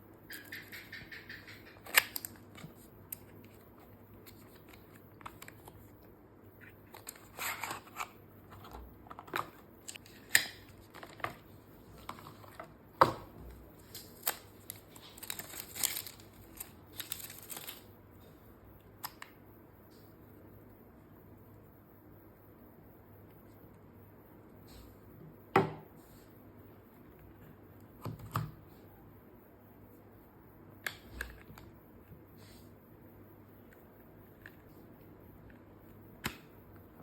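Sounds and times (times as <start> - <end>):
packaging rustling and crinkling: 13.8 - 17.9.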